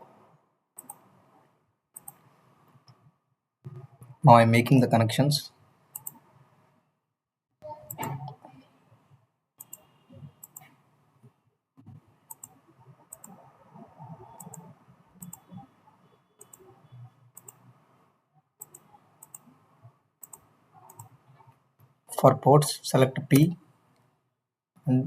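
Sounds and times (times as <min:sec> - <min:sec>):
faint low background noise: 0:00.0 - 0:25.0
computer mouse clicking: 0:00.8 - 0:01.2, 0:02.0 - 0:03.0, 0:05.9 - 0:06.3, 0:09.6 - 0:10.8, 0:12.2 - 0:13.4, 0:14.0 - 0:15.6, 0:16.4 - 0:16.7, 0:17.3 - 0:17.8, 0:18.6 - 0:19.6, 0:20.2 - 0:21.9.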